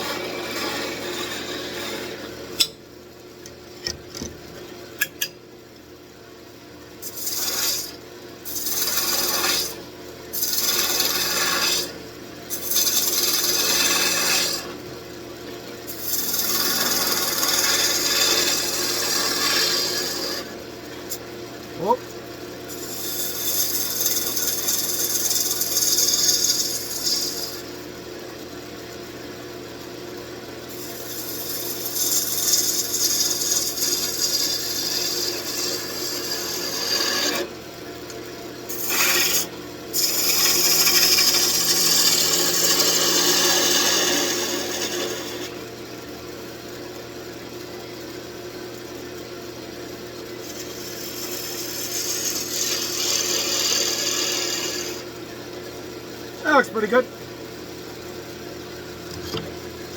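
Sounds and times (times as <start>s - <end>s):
wood lathe humming: 0.0s - 2.5s, 8.6s - 9.7s, 10.4s - 12.0s, 12.6s - 14.8s, 16.0s - 21.2s, 22.7s - 27.7s, 30.8s - 37.5s, 38.7s - 45.6s, 50.4s - 55.1s
tool scraping spinning wood: 0.0s - 2.6s, 7.0s - 9.8s, 10.4s - 14.8s, 15.9s - 21.2s, 22.7s - 27.7s, 30.7s - 37.5s, 38.7s - 45.6s, 50.3s - 55.2s, 58.8s - 59.9s.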